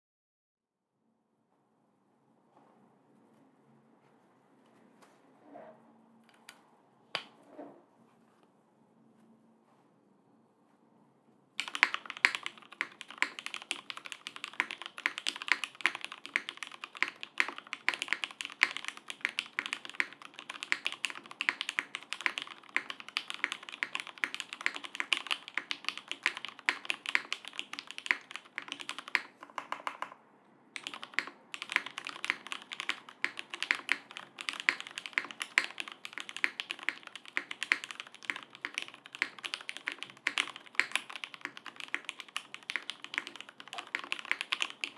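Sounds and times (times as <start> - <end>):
fast typing on mechanical keyboard: 11.6 - 30.2, 30.8 - 44.9.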